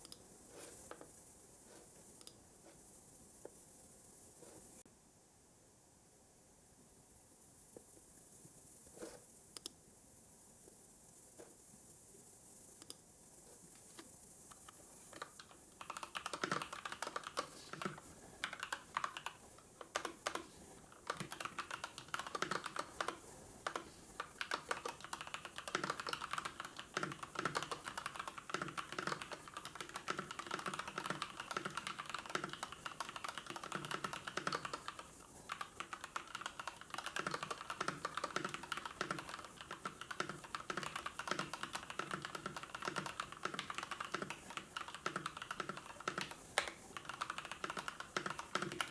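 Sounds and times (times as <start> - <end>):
keyboard typing clicks: 14.6 - 48.9.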